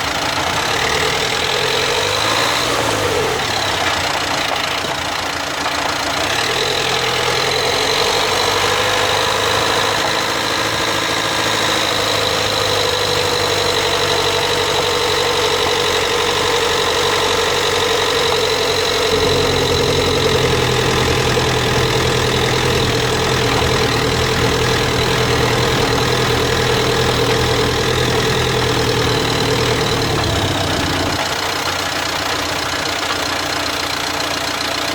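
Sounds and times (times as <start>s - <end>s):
car engine running: 0.0s - 34.9s
steady droning tone: 18.5s - 31.2s.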